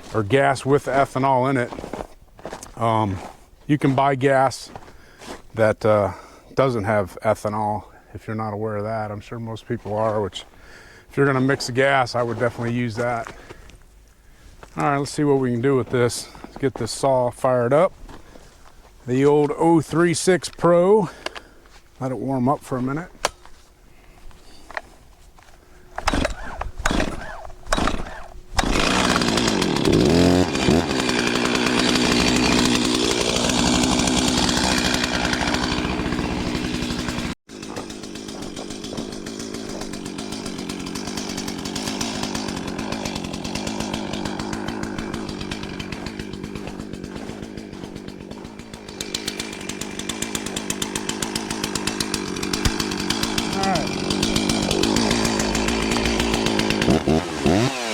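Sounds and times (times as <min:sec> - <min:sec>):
chainsaw engine running: 0:25.4 - 0:57.9
starter cord pulls: 0:25.9 - 0:37.2, 0:38.6 - 0:57.9.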